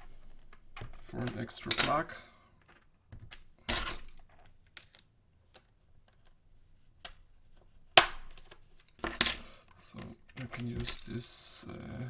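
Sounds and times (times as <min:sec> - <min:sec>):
objects clattering: 0:08.3 - 0:11.3.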